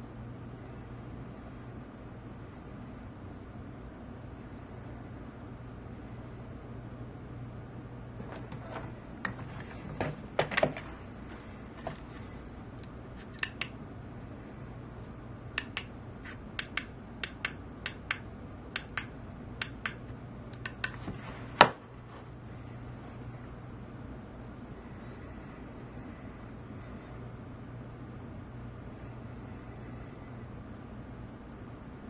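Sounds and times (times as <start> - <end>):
low steady hum: 0.0 - 32.0
small push buttons clicking: 15.6 - 15.9, 16.6 - 18.2, 18.8 - 21.0.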